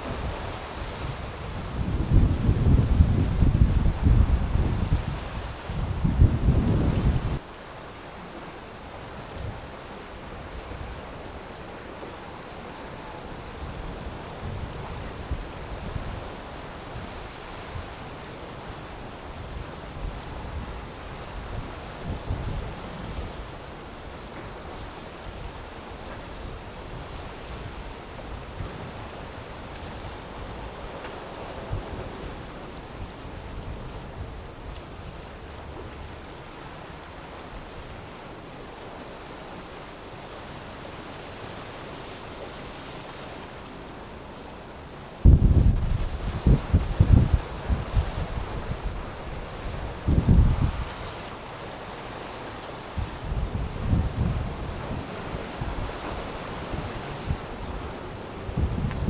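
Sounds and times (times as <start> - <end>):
wind gusting on microphone: 0.0 - 7.4, 13.4 - 30.9, 45.2 - 51.3, 52.9 - 59.0
rough waves: 0.0 - 59.0.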